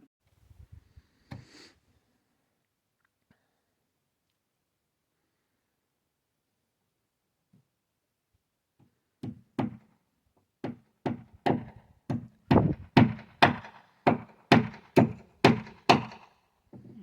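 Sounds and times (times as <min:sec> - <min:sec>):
hammer driving nails into wood: 0:09.2 - 0:09.9, 0:10.6 - 0:16.4.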